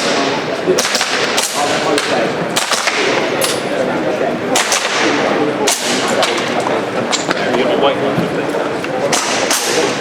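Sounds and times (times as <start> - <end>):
airsoft pistol shots: 0.0 - 3.2, 4.6 - 6.4, 9.1 - 10.0.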